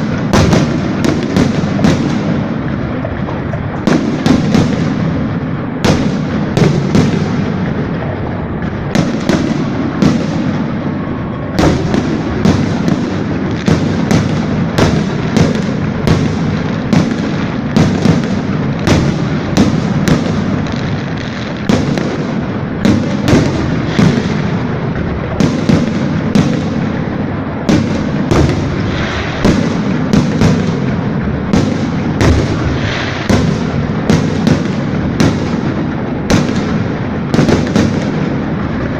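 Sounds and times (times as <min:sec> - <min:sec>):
low rumble of booms and echoes: 0:00.0 - 0:38.9
fireworks shell bursts: 0:31.7 - 0:35.3.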